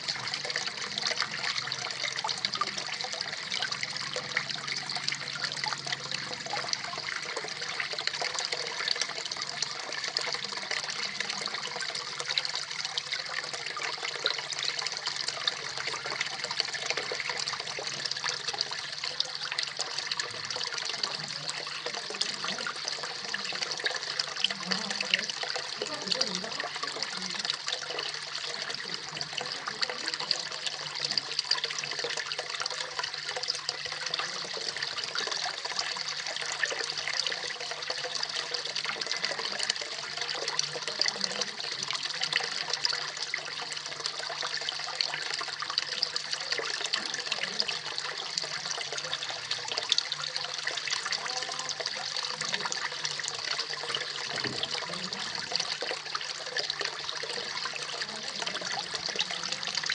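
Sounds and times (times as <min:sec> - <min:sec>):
small waterfall splashing: 0:00.0 - 0:59.9.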